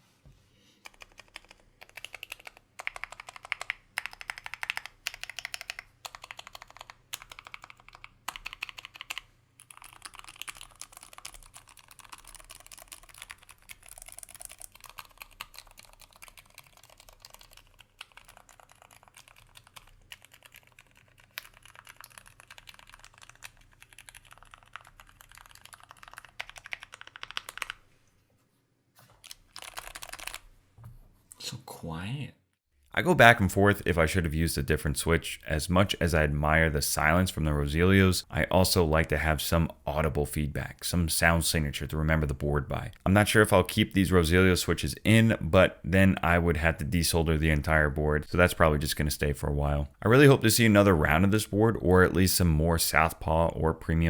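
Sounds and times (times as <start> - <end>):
muted keyboard typing: 0.8 - 27.8, 29.2 - 30.4.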